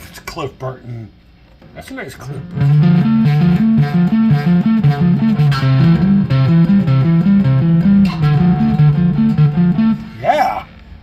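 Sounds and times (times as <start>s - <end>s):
electric bass guitar riff: 2.3s - 11.0s.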